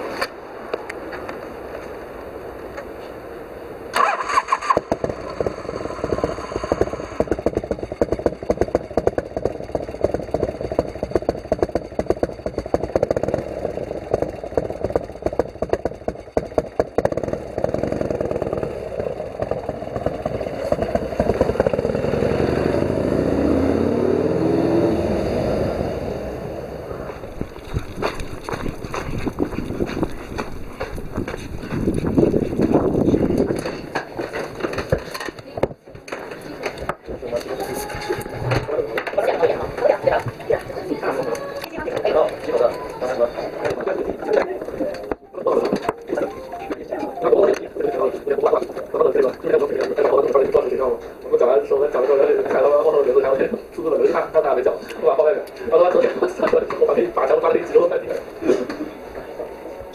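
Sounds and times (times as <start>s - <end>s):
motorcycle engine starting and running: 3.9s - 37.5s, 38.2s - 46.3s.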